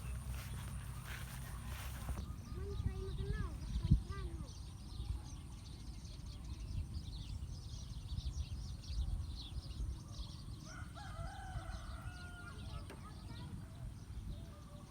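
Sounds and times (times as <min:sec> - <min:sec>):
small birds chirping: 0:00.0 - 0:14.9
rooster crowing: 0:10.7 - 0:12.6.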